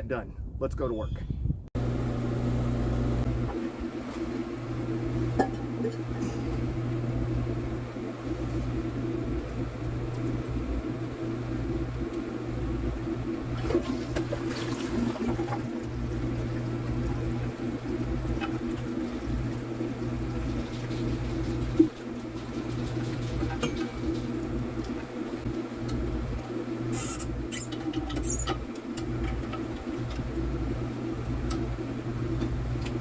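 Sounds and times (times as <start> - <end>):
steady low hum: 1.5 - 33.0
water running in toilet: 8.3 - 33.0.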